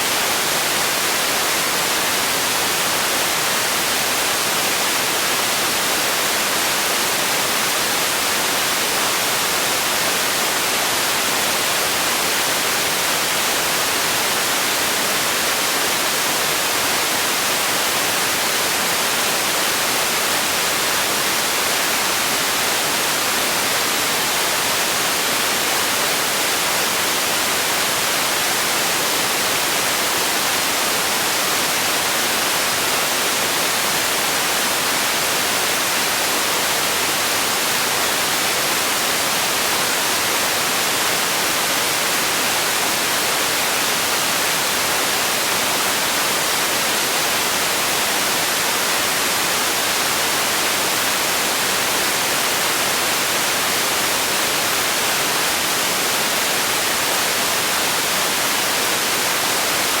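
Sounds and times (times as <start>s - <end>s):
white noise hiss: 0.0s - 60.0s.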